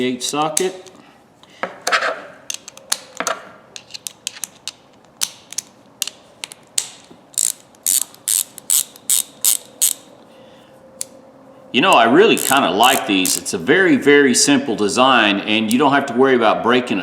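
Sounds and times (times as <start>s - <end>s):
ratchet pawl clicking: 7.4s - 10.1s, 12.4s - 13.5s.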